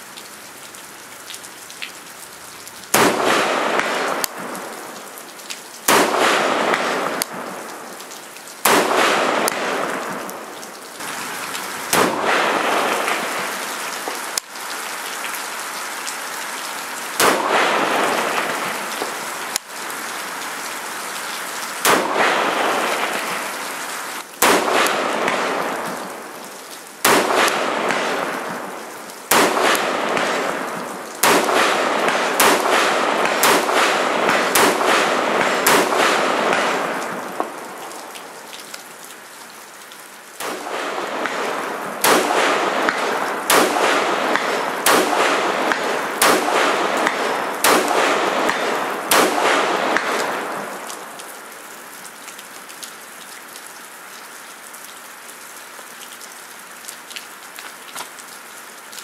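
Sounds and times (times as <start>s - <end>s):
rifle shots: 2.9s - 4.6s, 5.9s - 7.6s, 8.6s - 10.2s, 11.9s - 13.6s, 17.2s - 19.1s, 21.8s - 23.4s, 24.4s - 26.0s, 27.0s - 28.7s, 29.3s - 37.5s, 40.4s - 50.7s.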